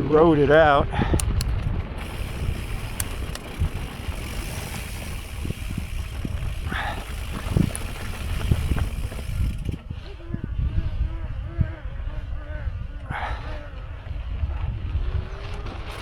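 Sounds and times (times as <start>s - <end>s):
mountain bike riding through sand: 0.0s - 16.0s
bike clicks and knocks: 1.0s - 10.1s, 15.0s - 16.0s.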